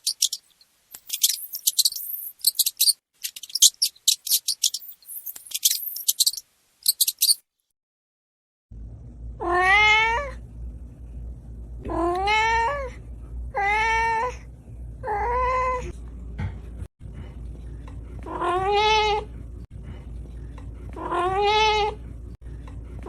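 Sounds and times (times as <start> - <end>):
high rapid chirping: 0.0 - 7.4
low steady hum: 8.7 - 18.2.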